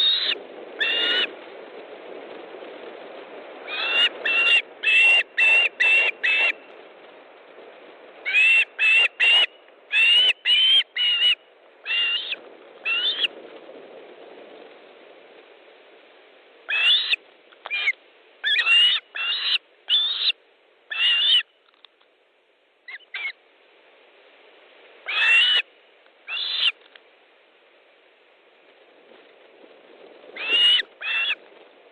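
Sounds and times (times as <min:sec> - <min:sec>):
osprey whistled calls: 0:00.0 - 0:01.3, 0:03.7 - 0:06.6, 0:08.2 - 0:13.3, 0:16.7 - 0:21.5, 0:22.9 - 0:23.4, 0:25.1 - 0:25.6, 0:26.2 - 0:26.8, 0:30.4 - 0:31.4.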